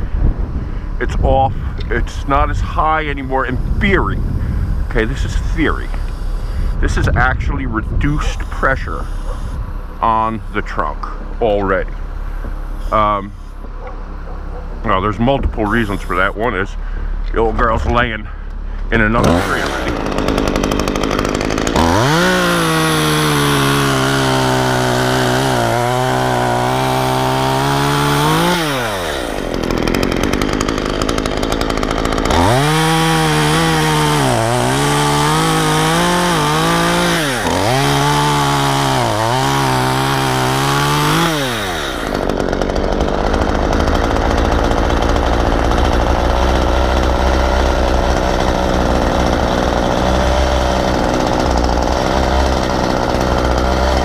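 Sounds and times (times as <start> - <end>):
low rumble: 0.0 - 19.2
chainsaw cutting wood: 1.8 - 7.4, 8.0 - 11.2, 15.5 - 16.6, 18.8 - 54.0.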